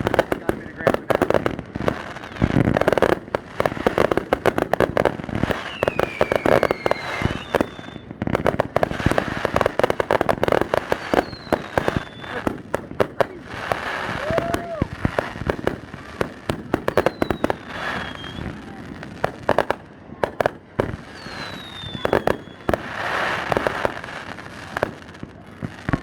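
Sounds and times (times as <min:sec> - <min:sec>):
fireworks bangs and crackling: 0:00.0 - 0:26.0
falling firework whistle: 0:05.4 - 0:09.6, 0:10.6 - 0:12.6, 0:13.6 - 0:18.8, 0:21.0 - 0:24.1.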